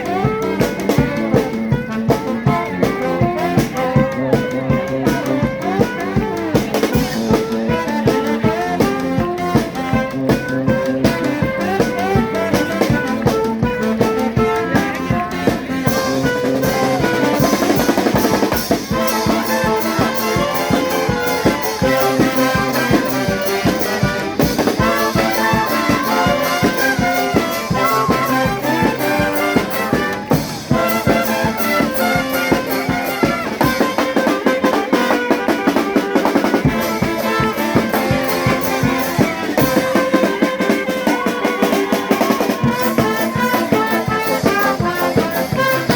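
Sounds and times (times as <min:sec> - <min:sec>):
brass band playing: 0:00.0 - 0:45.9
steady drum beat: 0:00.0 - 0:45.9
trumpets and trombones melody: 0:00.0 - 0:45.9.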